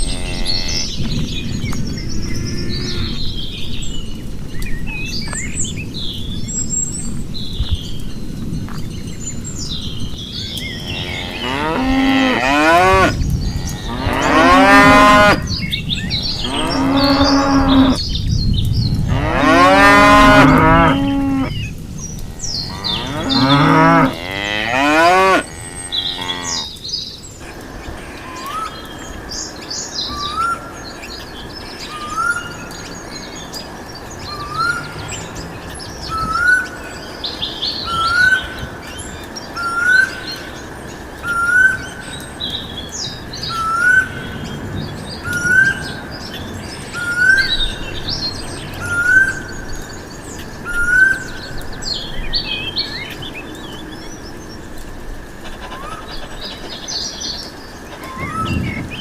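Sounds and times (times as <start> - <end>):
cattle mooing: 0.0 - 0.9, 10.9 - 15.5, 16.2 - 18.0, 19.1 - 21.6, 22.3 - 26.7
birds chirping: 0.0 - 59.0.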